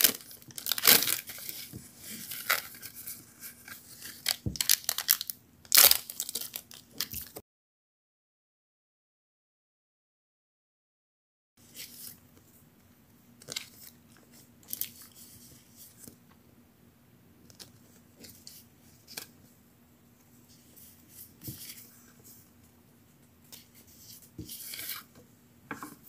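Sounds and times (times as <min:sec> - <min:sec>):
packaging crinkling and rustling: 0:00.0 - 0:07.4
faint steady hum: 0:11.6 - 0:26.0.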